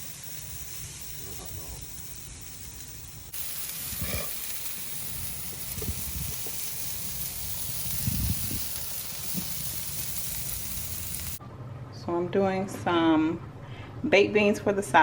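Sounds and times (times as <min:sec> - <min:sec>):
meat sizzling on a grill: 0:00.0 - 0:11.4.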